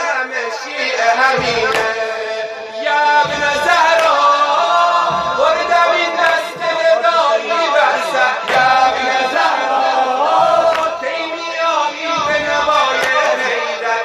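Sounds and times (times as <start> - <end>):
men chanting together: 0.0 - 14.0
low thumps: 1.2 - 2.1, 2.9 - 7.2, 7.9 - 13.6.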